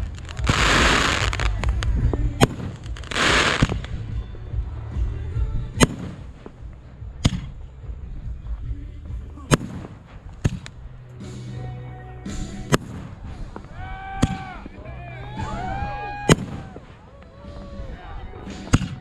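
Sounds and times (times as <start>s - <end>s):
fireworks bangs: 0.0s - 11.1s, 12.3s - 19.0s
fireworks crackle: 0.0s - 11.1s, 12.3s - 19.0s.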